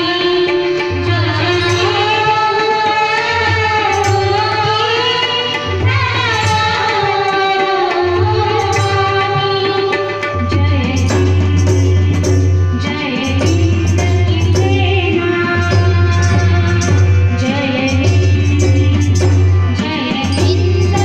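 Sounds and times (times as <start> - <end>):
instrumental accompaniment: 0.0 - 21.0
girl singing: 12.8 - 21.0.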